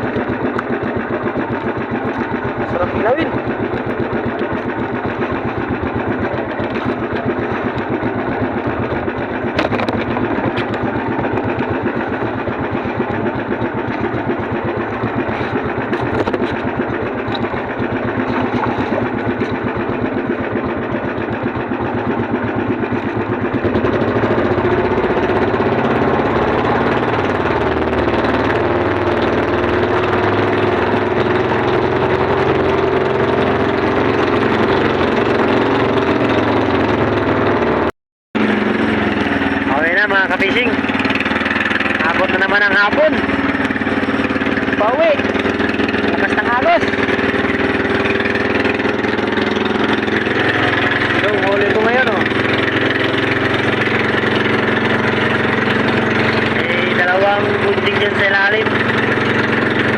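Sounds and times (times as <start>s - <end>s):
small boat engine running: 0.0s - 59.9s.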